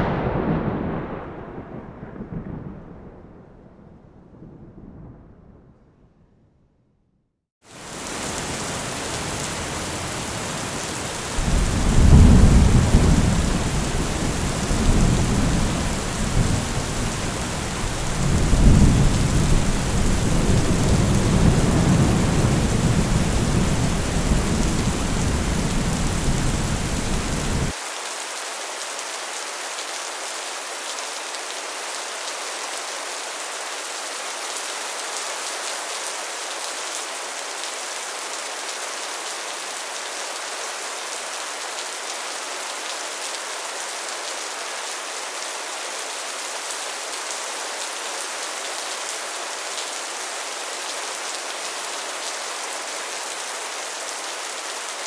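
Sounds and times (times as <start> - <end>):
rain on a metal roof: 0.0 - 3.4, 7.7 - 55.0
thunder rumbling: 0.0 - 6.6, 8.0 - 27.7.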